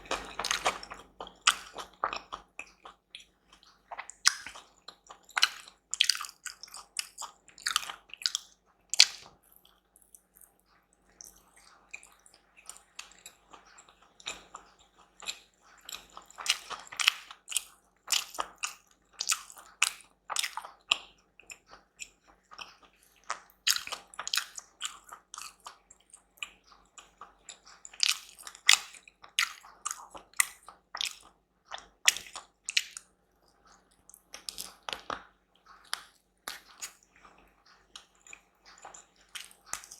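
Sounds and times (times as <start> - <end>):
person chewing food: 0.0 - 39.9
crisp clicks and smacks: 30.3 - 39.9.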